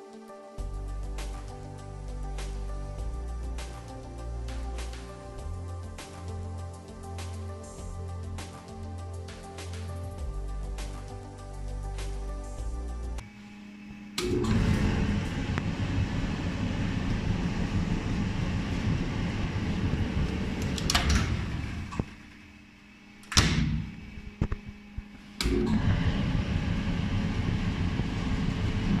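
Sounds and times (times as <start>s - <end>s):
clothes dryer rumbling: 14.2s - 22.5s, 25.2s - 29.0s.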